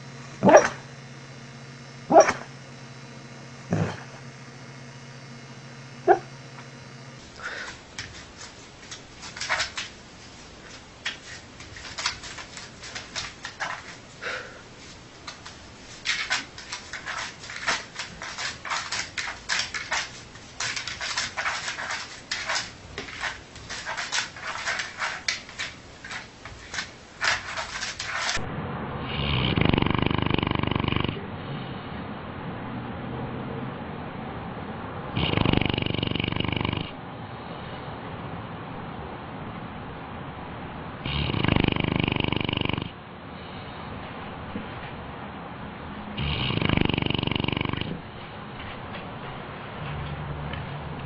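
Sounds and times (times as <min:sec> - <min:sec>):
dog snuffling in sleep: 0:03.7 - 0:04.2, 0:06.1 - 0:06.3, 0:29.0 - 0:31.7, 0:35.2 - 0:37.0, 0:41.0 - 0:43.0, 0:46.2 - 0:48.0
dog whimpering: 0:06.1 - 0:06.3.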